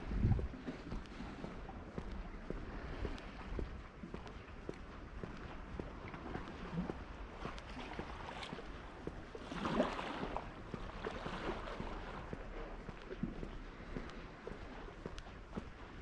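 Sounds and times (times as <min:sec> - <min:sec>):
seawater sloshing and lapping: 0:00.1 - 0:16.0
water surging: 0:06.9 - 0:12.4.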